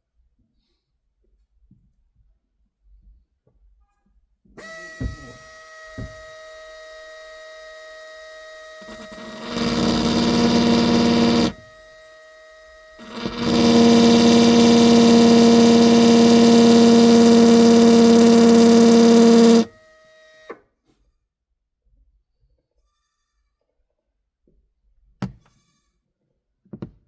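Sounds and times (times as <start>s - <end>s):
drill whining against glass: 8.8s - 11.7s, 13.0s - 19.8s.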